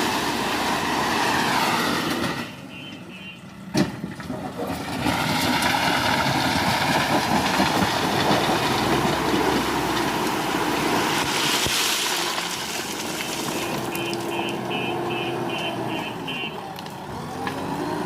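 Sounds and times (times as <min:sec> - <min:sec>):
diesel engine rattling under load: 0:03.6 - 0:16.0.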